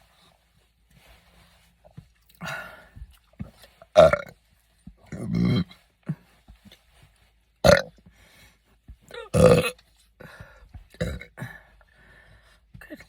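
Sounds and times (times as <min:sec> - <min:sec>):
person burping: 0:04.0 - 0:04.3, 0:05.1 - 0:05.8, 0:07.6 - 0:08.0, 0:09.1 - 0:09.8, 0:11.0 - 0:11.6
person hiccuping: 0:09.1 - 0:09.8, 0:11.0 - 0:11.4.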